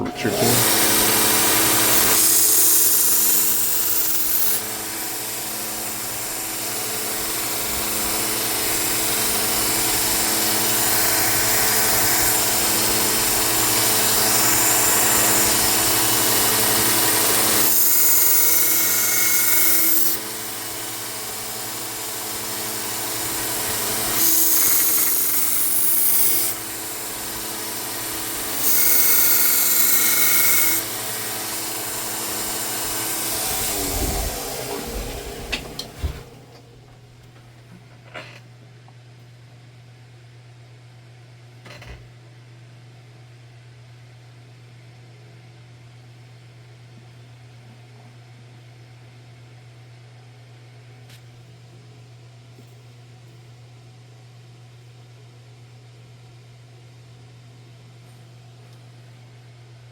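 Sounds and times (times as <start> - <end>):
belt sander running: 0.0 - 37.4
blade grinding on abrasive belt: 0.2 - 36.7.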